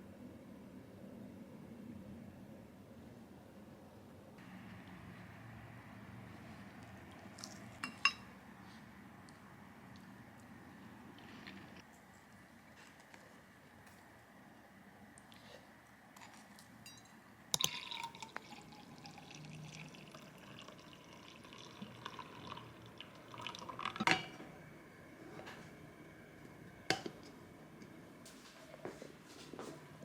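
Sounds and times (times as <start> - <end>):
glass clinks: 16.8 - 17.7
drink pouring into glass: 17.6 - 24.2.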